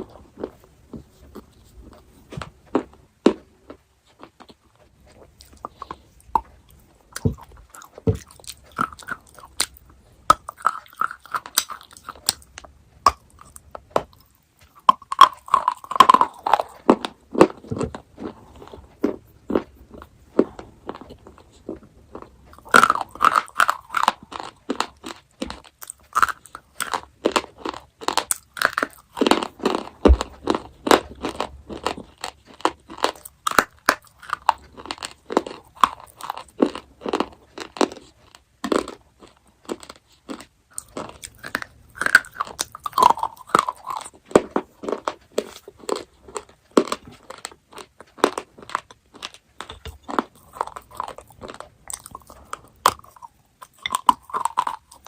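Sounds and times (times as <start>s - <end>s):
chocolate crunching and chewing: 0.0s - 55.0s.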